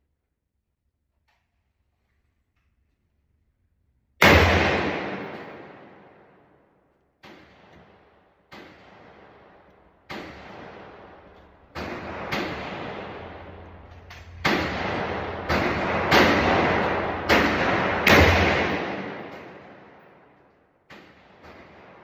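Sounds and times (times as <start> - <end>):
gunshots with echo: 4.2 - 6.3, 7.2 - 22.0.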